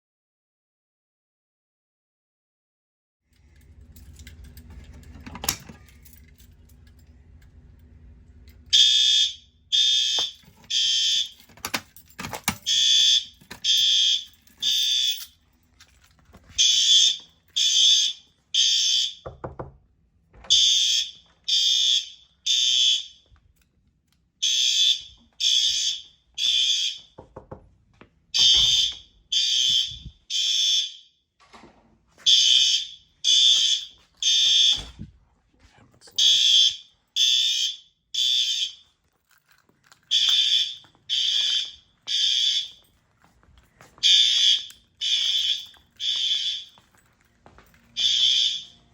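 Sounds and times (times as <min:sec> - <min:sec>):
fire alarm horns blasting: 0:08.7 - 0:15.5, 0:16.6 - 0:19.4, 0:20.5 - 0:23.4, 0:24.4 - 0:27.2, 0:28.3 - 0:31.4, 0:32.2 - 0:35.1, 0:36.2 - 0:39.0, 0:40.1 - 0:43.0, 0:44.0 - 0:48.9.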